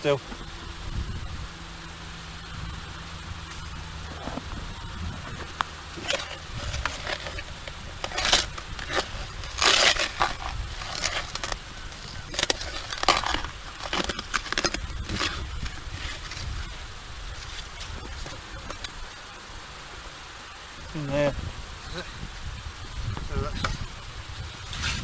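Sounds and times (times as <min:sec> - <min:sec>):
shovel scraping wet sand: 0:06.0 - 0:16.6.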